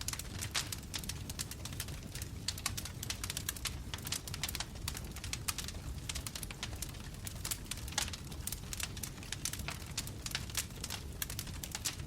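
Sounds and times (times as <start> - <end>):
low rumble of flame: 0.0 - 12.0
wood fire crackling and popping: 0.0 - 12.0.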